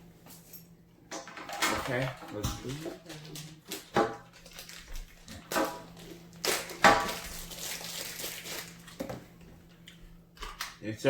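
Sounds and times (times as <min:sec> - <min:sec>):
packaging rustling and crinkling: 0:01.5 - 0:09.4.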